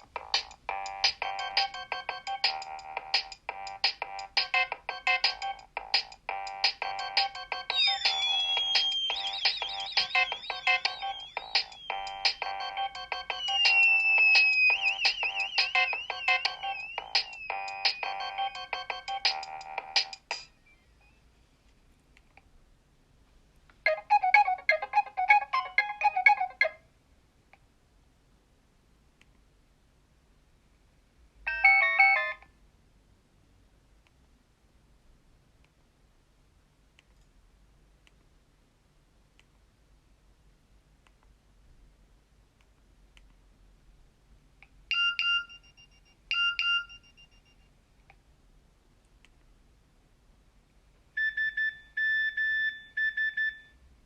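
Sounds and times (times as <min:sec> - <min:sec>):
mobile phone alert tone: 0:06.8 - 0:21.2.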